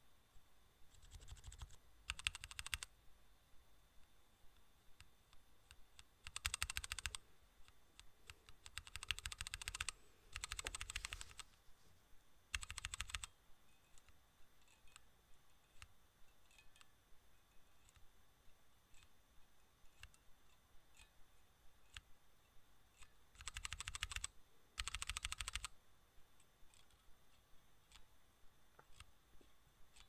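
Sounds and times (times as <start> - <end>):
rapid even clicking: 0.9 - 2.9, 4.6 - 11.5, 12.5 - 13.3, 23.0 - 25.8.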